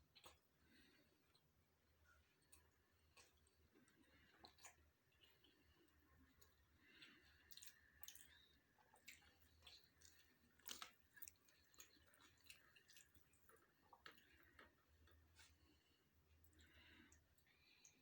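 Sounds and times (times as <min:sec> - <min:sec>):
close-up chewing: 0:00.0 - 0:18.0
mouth clicks and wet smacks: 0:02.4 - 0:15.5.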